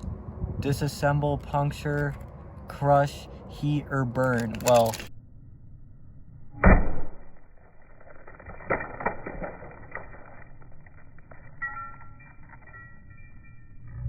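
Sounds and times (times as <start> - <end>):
sledgehammer thud: 6.5 - 7.5.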